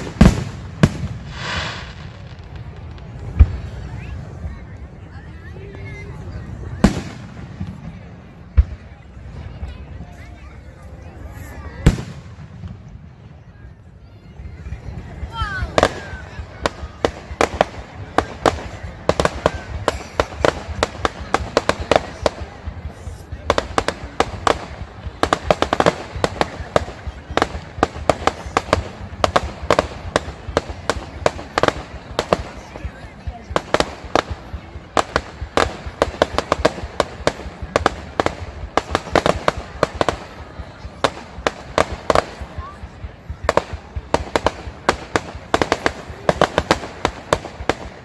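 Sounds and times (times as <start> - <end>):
fireworks bangs and crackles: 0.0 - 48.0.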